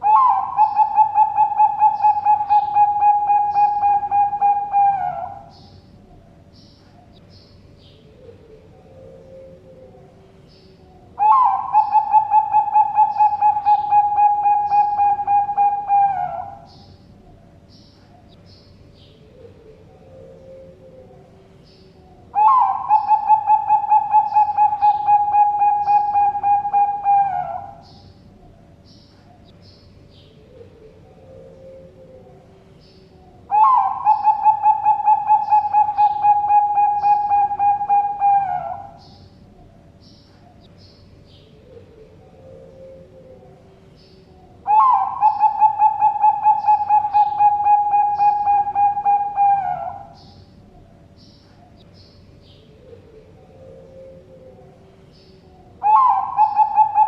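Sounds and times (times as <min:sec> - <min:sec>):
dove cooing: 0:00.0 - 0:07.2, 0:07.8 - 0:18.4, 0:19.0 - 0:29.6, 0:30.2 - 0:40.7, 0:41.3 - 0:57.0
faint small birds chirping: 0:00.0 - 0:57.0.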